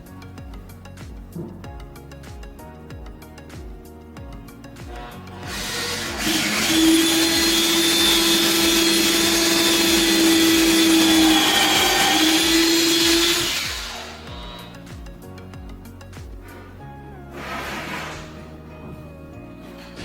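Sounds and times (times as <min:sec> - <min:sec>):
electric motor running: 0:05.0 - 0:14.8.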